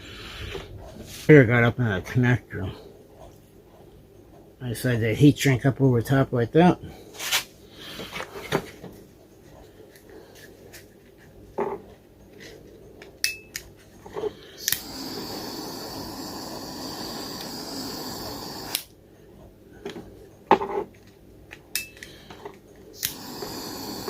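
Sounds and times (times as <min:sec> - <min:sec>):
heat gun blowing: 0:14.6 - 0:18.9, 0:23.0 - 0:24.0.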